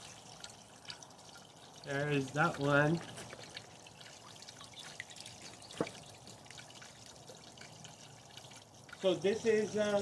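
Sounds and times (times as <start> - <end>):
pond water trickling and dripping: 0.0 - 10.0.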